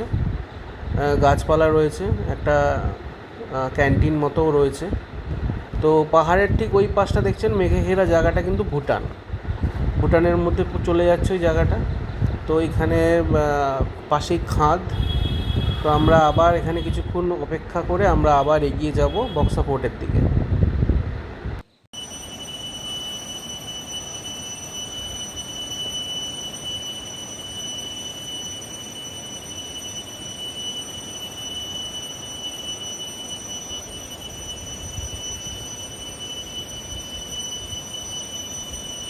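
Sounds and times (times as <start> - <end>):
insect ringing call: 22.0 - 39.0.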